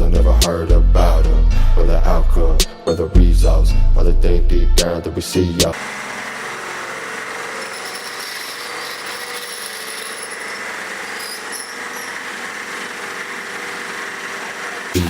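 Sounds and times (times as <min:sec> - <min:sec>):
machinery whirring with high whine: 0:05.7 - 0:15.0.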